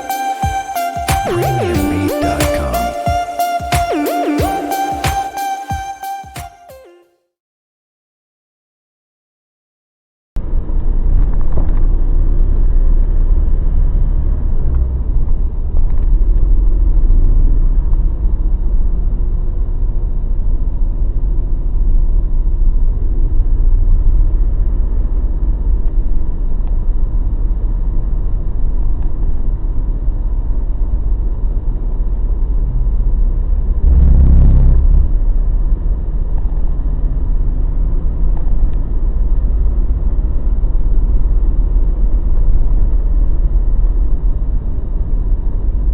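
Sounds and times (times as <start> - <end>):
pickup engine rumble while driving: 10.5 - 45.9.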